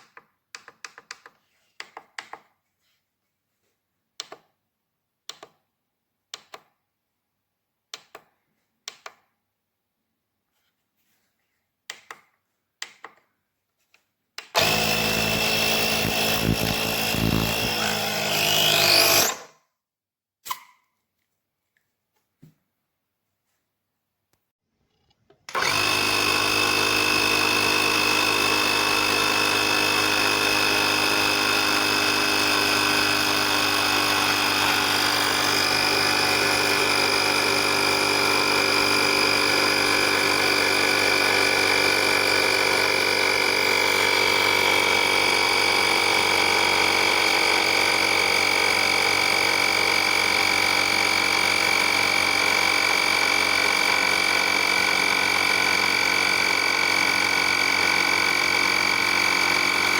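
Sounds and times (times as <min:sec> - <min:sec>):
air compressor whining: 0:14.6 - 0:19.5, 0:25.5 - 0:59.9.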